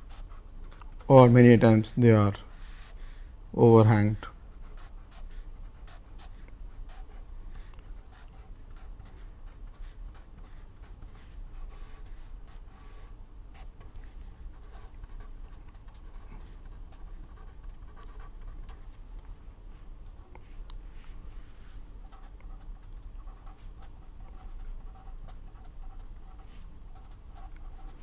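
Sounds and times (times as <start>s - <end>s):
low steady hum: 0.0s - 28.0s
pen scratching on paper: 14.5s - 18.8s, 22.1s - 28.0s.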